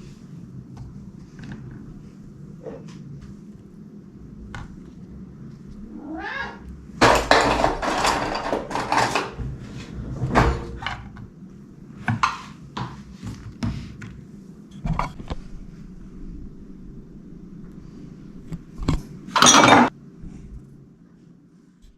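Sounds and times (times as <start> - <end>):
rustling and clatter: 7.0 - 11.3.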